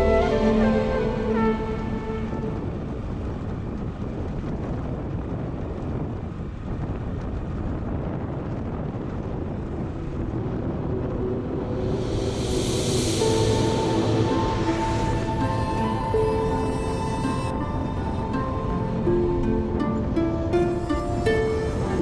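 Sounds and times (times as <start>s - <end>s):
wind buffeting the microphone: 0.0s - 22.0s
hiss: 11.4s - 17.4s.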